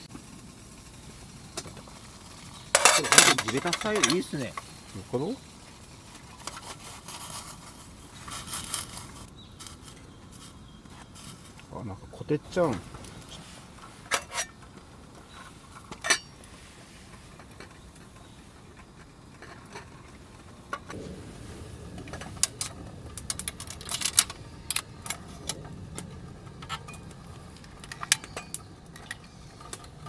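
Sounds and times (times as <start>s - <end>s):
camp gear clicking and clinking: 2.7s - 5.2s, 12.5s - 21.0s, 22.4s - 30.0s.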